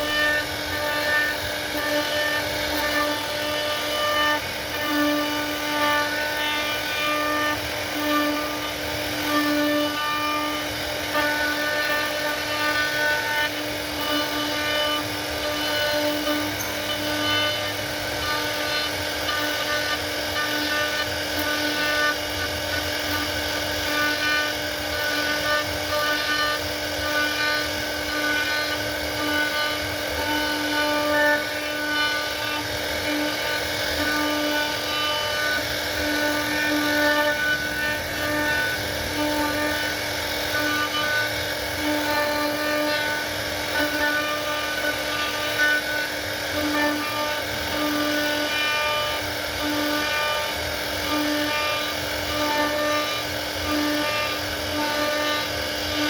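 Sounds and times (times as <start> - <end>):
router spindle whine: 0.0 - 56.0.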